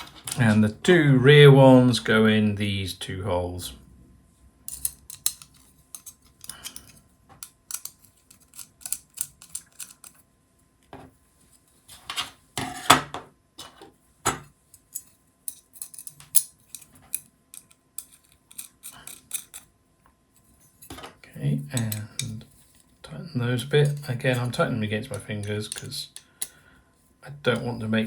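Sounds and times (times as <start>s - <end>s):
parts clattering: 0.0s - 0.6s, 4.7s - 10.2s
small parts clicking and tapping: 4.7s - 10.2s, 14.3s - 19.7s, 23.8s - 26.6s.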